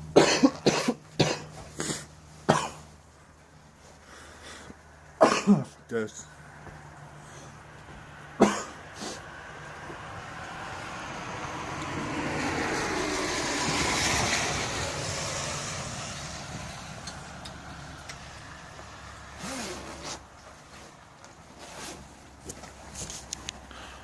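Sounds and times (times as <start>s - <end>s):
vehicle passing by: 5.8s - 20.3s.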